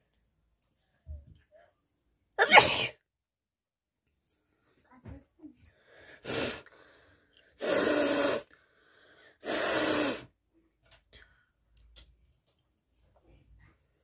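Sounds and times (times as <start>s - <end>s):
person blowing nose: 6.2s - 6.7s, 7.6s - 8.5s, 9.4s - 10.3s.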